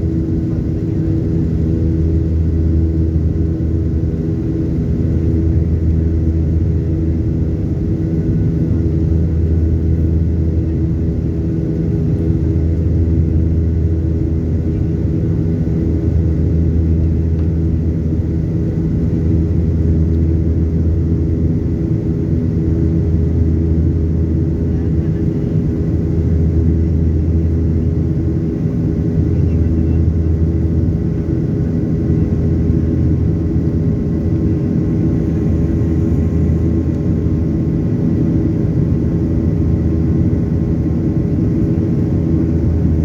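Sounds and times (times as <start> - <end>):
jet engine drone in cabin: 0.0 - 43.0.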